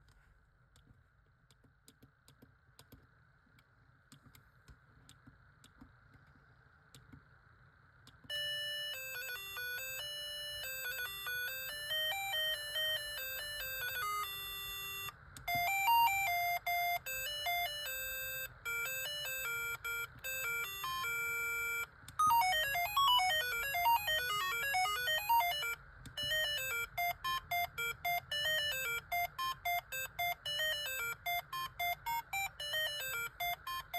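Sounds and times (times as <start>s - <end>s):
phone ringtones on loudspeaker: 8.3s - 33.9s.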